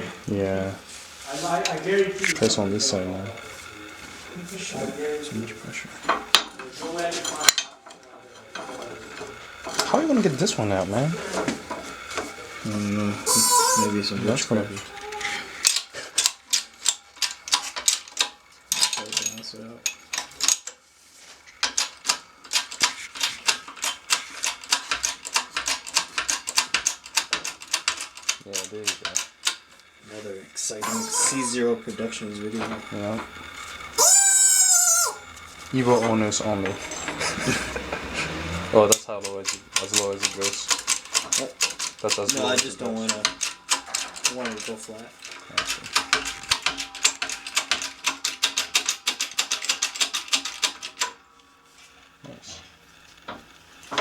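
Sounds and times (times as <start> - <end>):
tool clicking rapidly: 21.5 - 29.7, 30.7 - 51.2.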